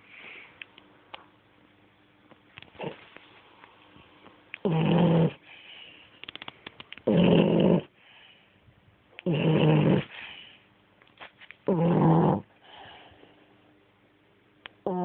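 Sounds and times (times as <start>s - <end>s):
dog snoring loudly: 4.6s - 5.4s, 7.0s - 7.9s, 9.2s - 10.2s, 11.7s - 12.5s
crackling clicks: 6.2s - 7.1s.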